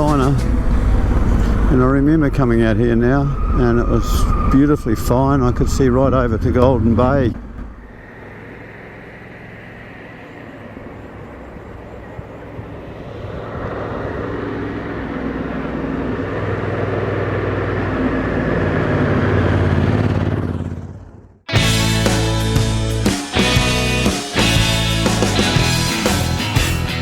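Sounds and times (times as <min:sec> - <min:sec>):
wind rushing: 0:00.0 - 0:20.9
motorcycle engine running: 0:07.5 - 0:27.0.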